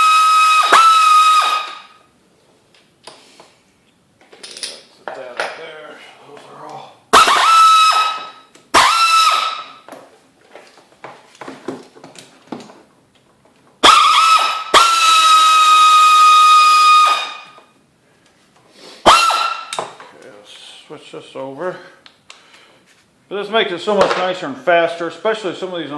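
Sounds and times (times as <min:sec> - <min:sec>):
air ratchet whining: 0:07.2 - 0:09.7, 0:13.8 - 0:17.3, 0:19.1 - 0:19.8.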